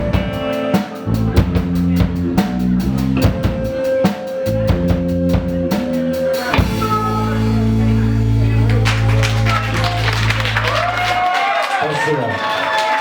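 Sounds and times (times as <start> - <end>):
drum kit with cymbals: 0.0 - 9.1
sustained low notes: 6.5 - 11.0.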